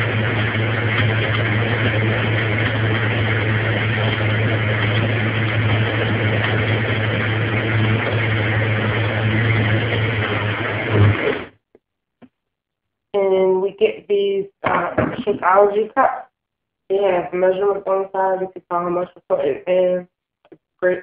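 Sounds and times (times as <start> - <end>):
blender motor blending ice: 0.0 - 11.5.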